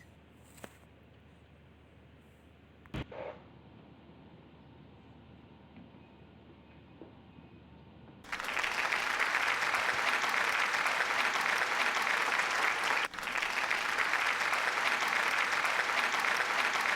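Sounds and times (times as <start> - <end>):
crowd applauding: 8.3 - 16.9.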